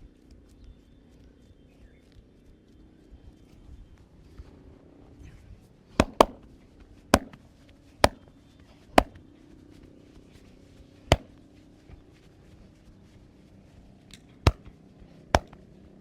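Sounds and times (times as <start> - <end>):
hands cracking on body: 6.0 - 9.3, 11.1 - 12.0, 14.1 - 15.8.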